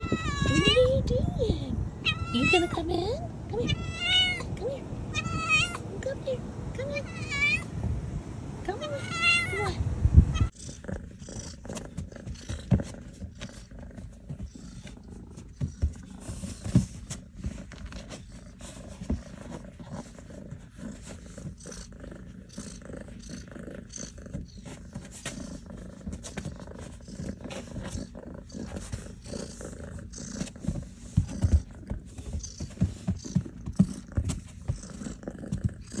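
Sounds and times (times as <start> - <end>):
kitten meowing: 0.0 - 1.0, 2.0 - 2.8, 3.6 - 4.5, 5.1 - 5.8, 8.8 - 10.5
kitten purring: 0.0 - 36.0.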